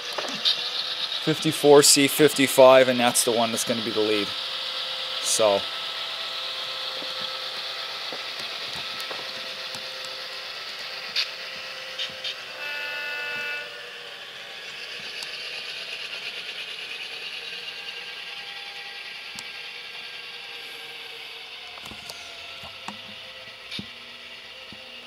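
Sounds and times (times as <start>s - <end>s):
diesel engine sound: 0.0s - 25.0s
model gear mechanism whir: 0.0s - 25.0s
wheels clicking on track: 0.0s - 25.0s
model locomotive horn blast: 8.9s - 15.7s.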